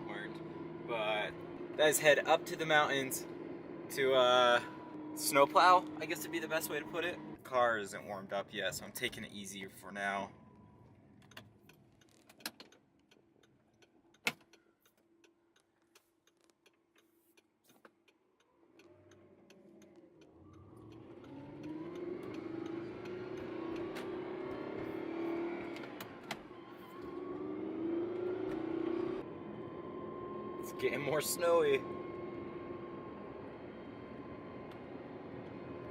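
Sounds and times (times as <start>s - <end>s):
sports car accelerating: 0.0s - 7.9s, 18.5s - 35.9s.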